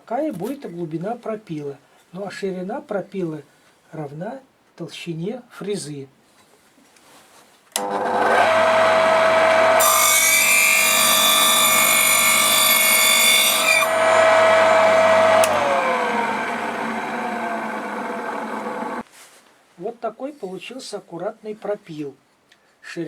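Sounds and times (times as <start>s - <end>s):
saw switch clicking: 7.8s - 8.0s, 14.9s - 16.4s
circular saw whining: 7.8s - 19.0s
saw cutting wood: 7.8s - 19.0s.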